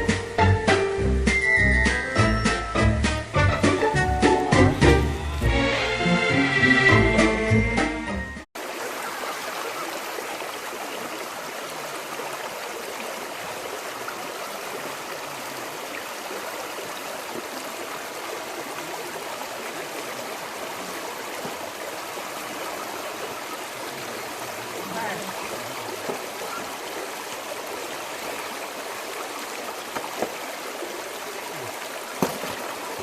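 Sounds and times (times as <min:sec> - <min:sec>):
music clip: 0:00.0 - 0:08.4
flowing stream water: 0:08.5 - 0:33.0.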